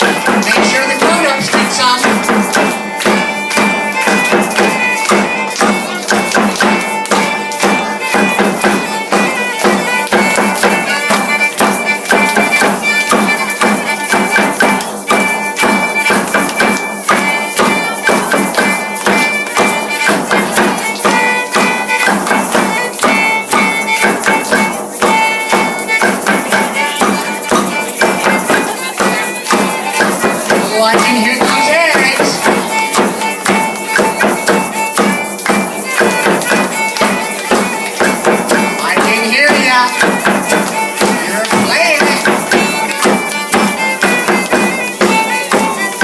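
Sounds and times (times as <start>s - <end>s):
plastic egg shakers rattling: 20.8s - 46.0s.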